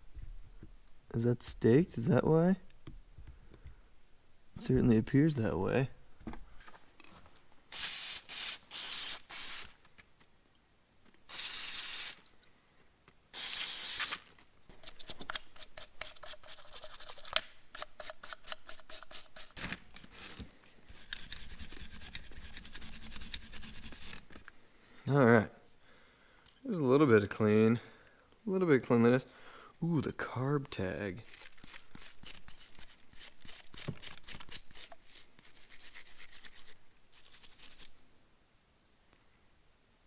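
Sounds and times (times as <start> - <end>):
hissing blasts of spray cleaner: 7.8 - 9.7, 11.3 - 12.2, 13.4 - 14.2.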